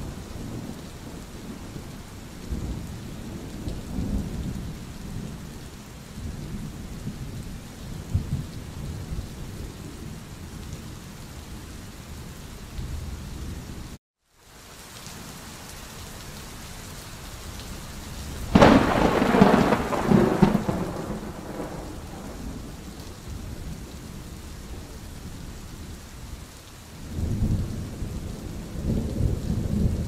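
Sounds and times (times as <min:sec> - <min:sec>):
steady rain: 0:00.0 - 0:30.0
thunderclap rumbling: 0:18.5 - 0:25.3, 0:27.1 - 0:30.0.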